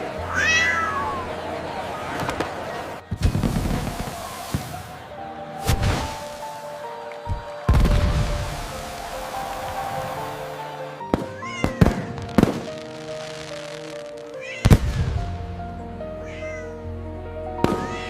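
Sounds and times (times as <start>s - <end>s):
background music: 0.0s - 18.0s
cartoon cat meowing: 14.4s - 14.7s, 16.2s - 16.7s.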